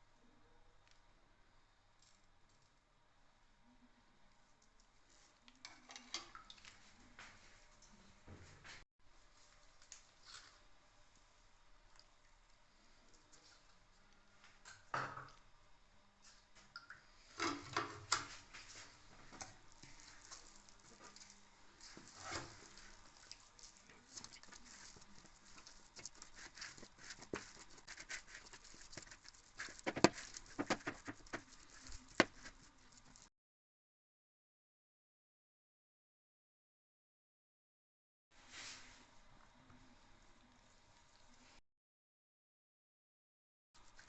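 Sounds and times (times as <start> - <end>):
food handling taps and rustles: 17.4 - 33.2.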